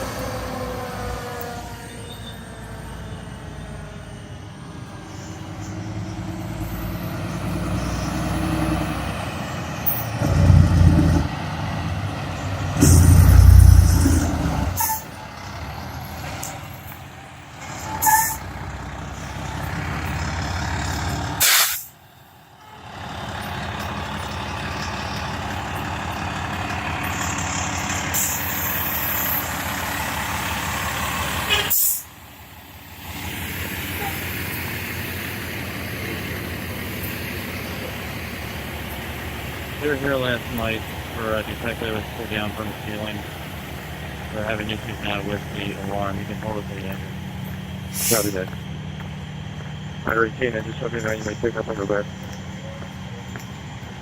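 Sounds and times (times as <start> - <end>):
diesel fire trucks idling: 0.0 - 54.0
air brakes hissing: 12.8 - 15.2, 17.7 - 18.5, 21.3 - 22.1, 27.8 - 29.6, 31.4 - 32.2, 47.2 - 48.6.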